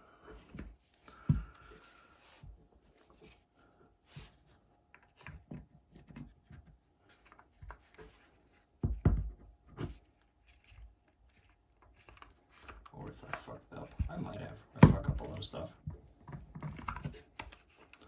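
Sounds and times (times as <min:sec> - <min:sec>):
plastic and metal parts handled: 0:09.8 - 0:15.7, 0:16.6 - 0:18.0.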